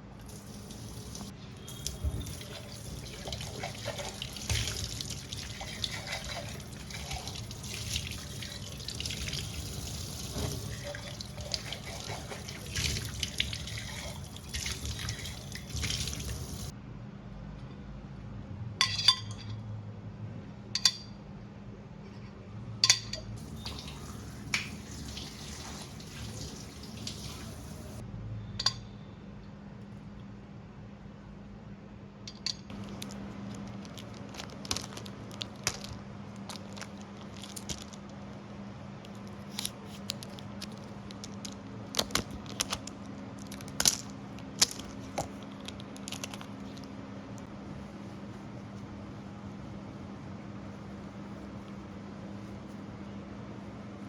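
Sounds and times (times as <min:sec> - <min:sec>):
tap water running into sink: 0:00.2 - 0:16.7, 0:23.4 - 0:28.0.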